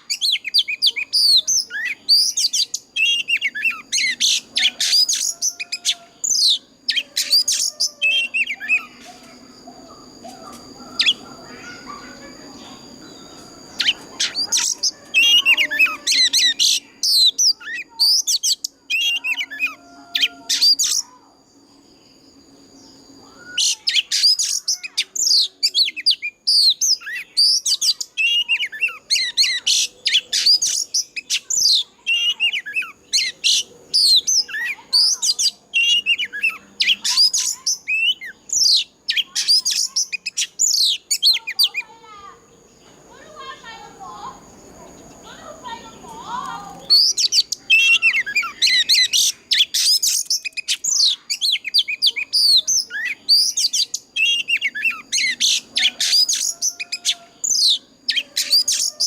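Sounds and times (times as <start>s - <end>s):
bird singing varied whistles: 46.8s - 59.0s.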